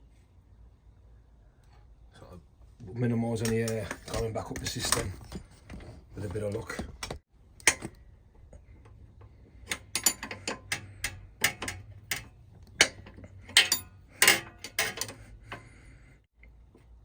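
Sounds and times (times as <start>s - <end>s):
hand tools clinking on metal: 9.7s - 15.7s.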